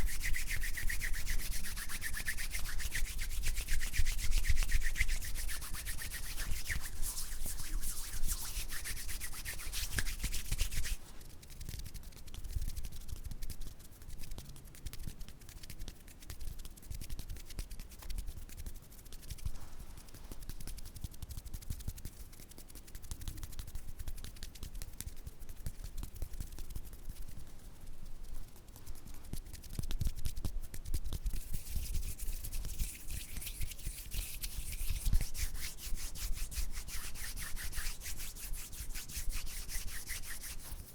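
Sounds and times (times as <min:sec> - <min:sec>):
palms rubbing together: 0:00.0 - 0:12.2, 0:24.4 - 0:40.9.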